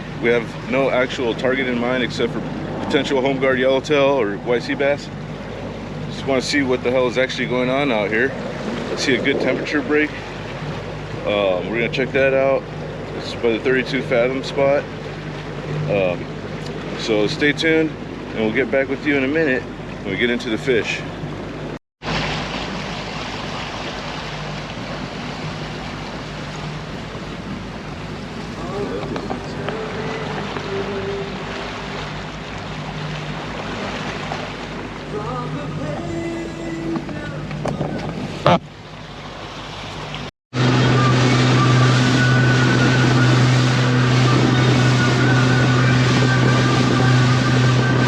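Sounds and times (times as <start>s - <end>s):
motorboat engine hum: 0.0s - 48.0s
rushing water: 0.0s - 48.0s
wind noise: 8.3s - 10.8s, 40.6s - 48.0s.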